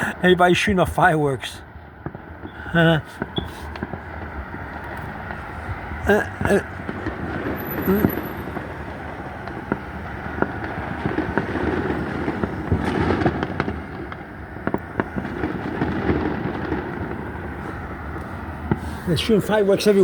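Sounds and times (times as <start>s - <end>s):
background rumble: 0.0s - 20.0s
fireworks bangs and pops: 1.9s - 20.0s.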